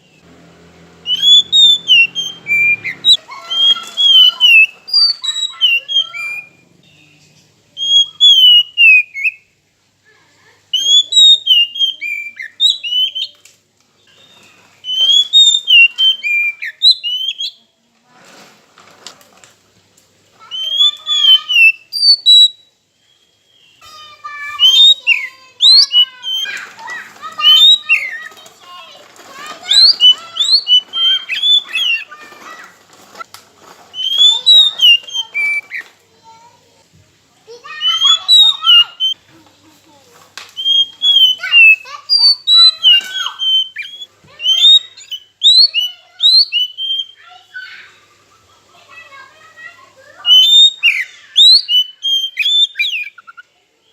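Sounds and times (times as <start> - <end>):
bird whistled song: 1.0 - 9.5, 10.7 - 13.4, 14.0 - 17.6, 20.4 - 32.7, 33.9 - 35.9, 37.7 - 39.2, 40.5 - 47.9, 50.1 - 53.5.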